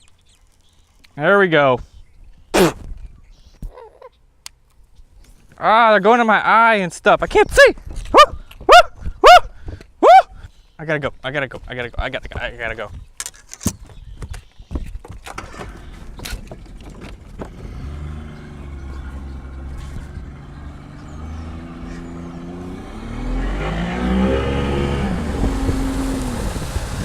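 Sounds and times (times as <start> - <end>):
outboard motor running: 15.4 - 27.0.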